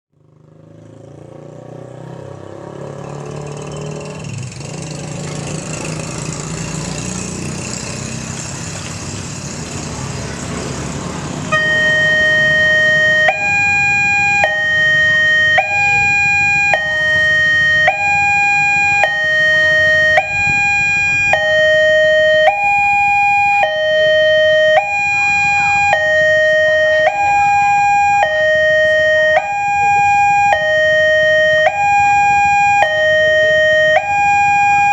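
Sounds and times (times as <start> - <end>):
two-tone level-crossing alarm: 11.5 - 34.9.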